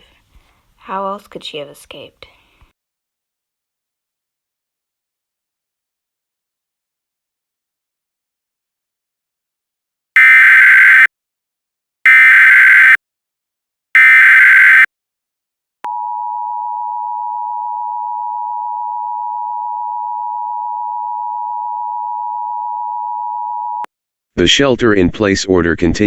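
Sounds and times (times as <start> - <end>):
digital header data bursts: 10.2 - 11.1, 12.1 - 13.0, 14.0 - 14.9
two-tone attention signal: 12.1 - 13.0, 14.0 - 14.9.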